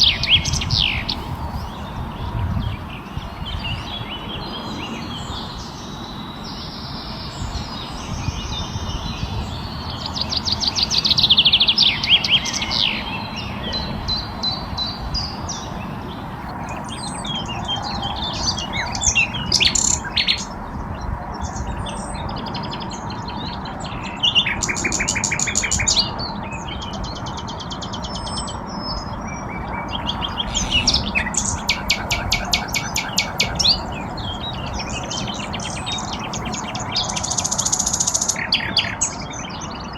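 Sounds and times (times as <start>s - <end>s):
songbirds singing and trilling: 0.0s - 39.9s
steady background noise: 23.8s - 39.9s.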